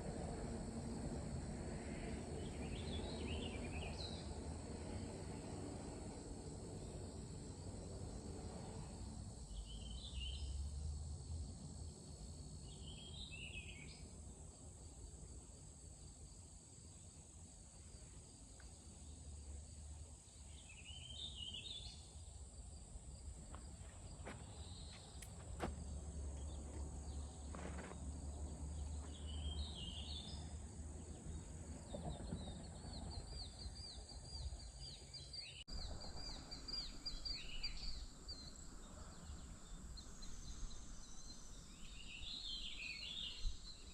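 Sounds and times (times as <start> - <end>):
high insect drone: 0.0 - 43.9
bird chirping: 26.4 - 43.9.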